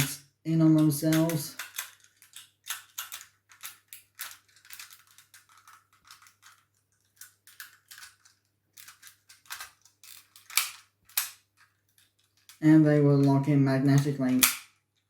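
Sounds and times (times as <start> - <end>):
plastic toy joints clicking: 0.8 - 15.0.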